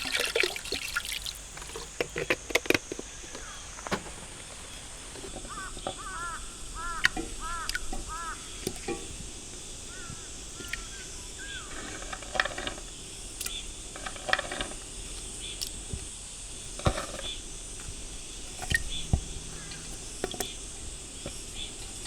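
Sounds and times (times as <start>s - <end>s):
stream rushing: 0.0s - 1.9s.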